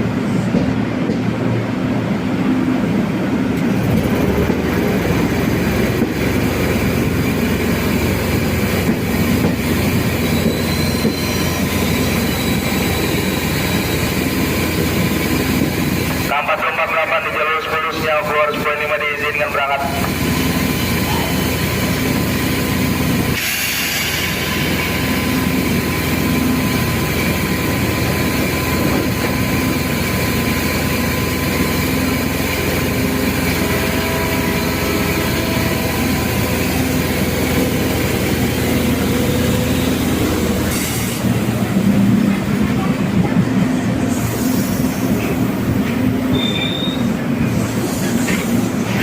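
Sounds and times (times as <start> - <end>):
electric train rumbling: 0.0 - 49.0
short air hiss: 23.4 - 24.5.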